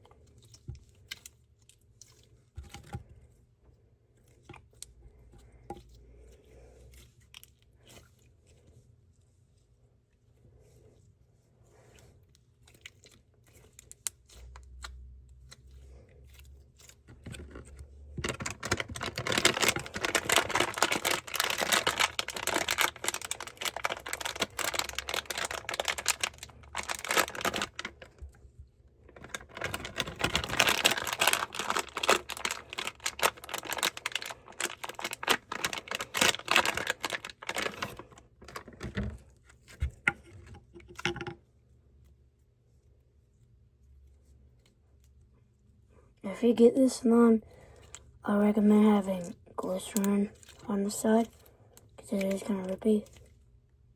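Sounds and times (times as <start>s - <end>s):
slime clicking and crackling: 12.5s - 28.3s, 29.0s - 38.8s, 48.8s - 53.4s.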